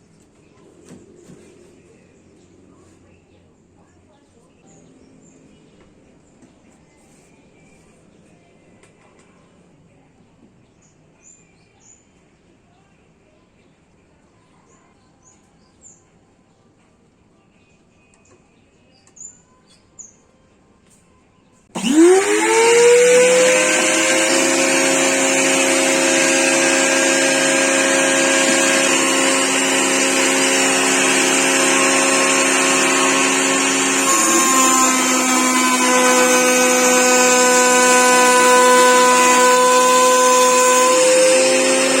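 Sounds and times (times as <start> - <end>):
trim router high whine: 21.8 - 42.0.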